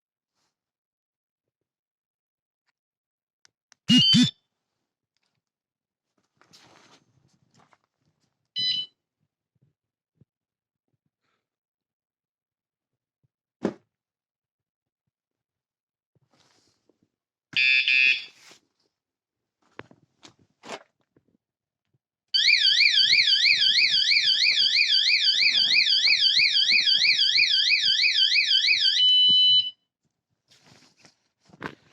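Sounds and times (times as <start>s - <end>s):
high beeping chirp: 3.9s - 4.3s
warbling alarm siren: 22.4s - 29.7s.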